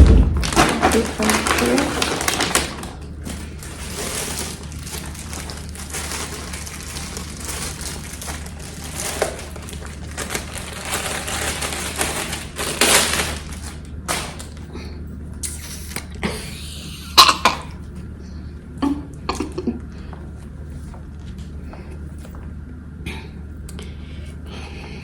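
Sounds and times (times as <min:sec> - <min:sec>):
packaging rustling and crinkling: 0:00.0 - 0:14.7.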